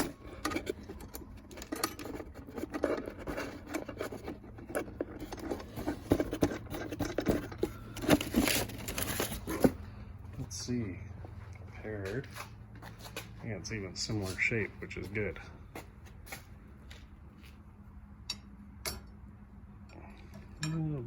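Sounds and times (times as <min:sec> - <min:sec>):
metal parts clinking and scraping: 0:00.0 - 0:09.8.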